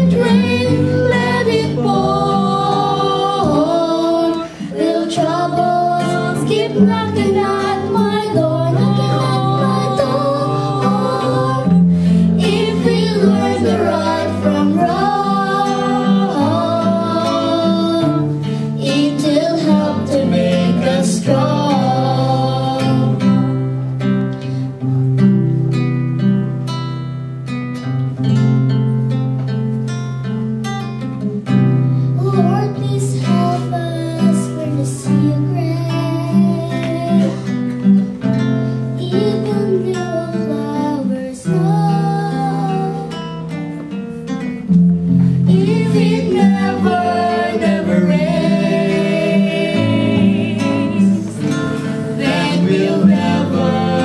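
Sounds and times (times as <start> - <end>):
voices singing: 0.0 - 23.7, 32.2 - 37.7, 39.0 - 43.5, 45.4 - 54.0
plucked acoustic guitar: 0.0 - 54.0.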